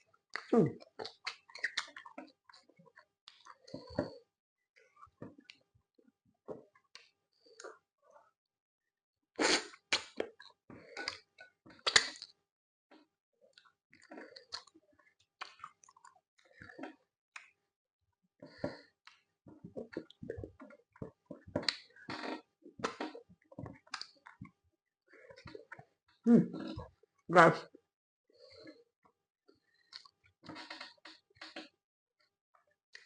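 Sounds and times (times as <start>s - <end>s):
wet chewing: 0.3s - 4.2s, 13.6s - 17.5s
lip smacks and clicks: 11.0s - 12.4s, 23.8s - 24.5s.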